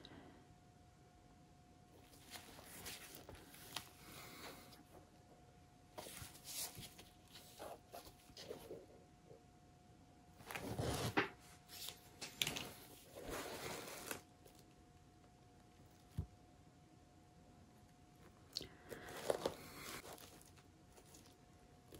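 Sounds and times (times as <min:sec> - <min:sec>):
faint steady hum: 0:00.0 - 0:21.9
rustling and handling noises: 0:01.9 - 0:05.3, 0:05.9 - 0:08.9, 0:10.4 - 0:16.4, 0:17.7 - 0:21.9.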